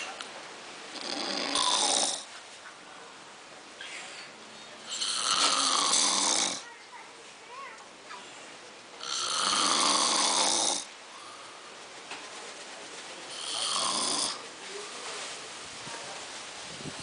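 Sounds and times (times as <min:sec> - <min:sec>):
man snoring heavily: 0:00.9 - 0:02.3, 0:04.9 - 0:06.6, 0:09.0 - 0:10.9, 0:13.3 - 0:14.4.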